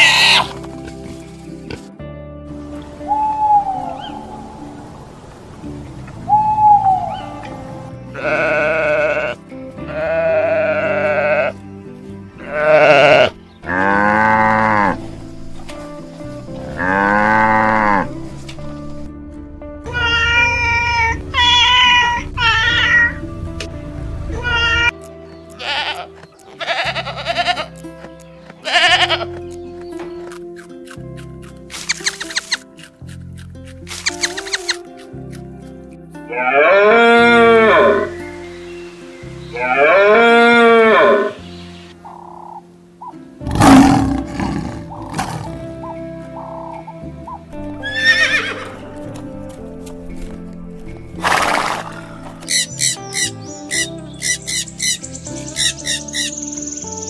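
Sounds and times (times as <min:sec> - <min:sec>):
quavering bleats: 0:00.0 - 0:00.6, 0:08.0 - 0:11.7, 0:12.3 - 0:15.5, 0:16.6 - 0:18.7, 0:19.8 - 0:23.2, 0:25.5 - 0:27.9, 0:28.6 - 0:29.5, 0:36.2 - 0:38.2, 0:39.5 - 0:42.6, 0:43.4 - 0:47.0, 0:47.6 - 0:49.1
background music: 0:00.0 - 0:57.0
cow mooing: 0:08.1 - 0:11.6, 0:12.4 - 0:15.2, 0:16.6 - 0:18.4, 0:36.3 - 0:38.2, 0:39.6 - 0:41.4, 0:43.4 - 0:45.8
lion roaring: 0:43.4 - 0:45.8.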